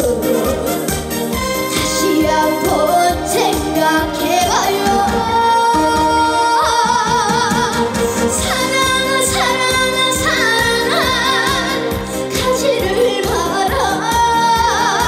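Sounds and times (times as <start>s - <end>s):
band backing track with beat: 0.0s - 15.0s
woman singing with vibrato: 0.0s - 15.0s.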